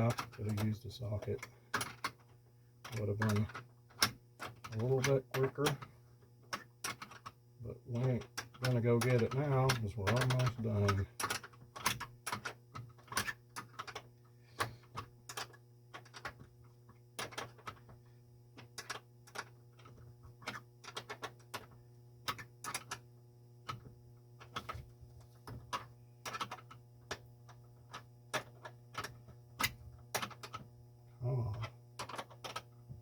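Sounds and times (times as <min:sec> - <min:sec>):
steady low hum: 0:21.7 - 0:32.0.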